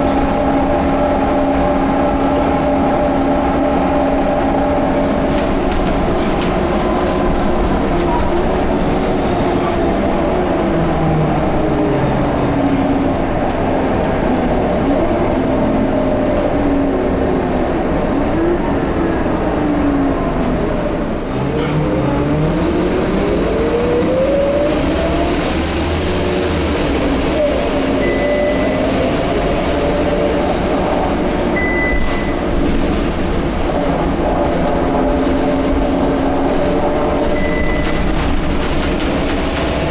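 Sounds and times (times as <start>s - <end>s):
bus diesel engine: 0.0s - 39.9s
high turbo-like whistle: 27.4s - 30.5s.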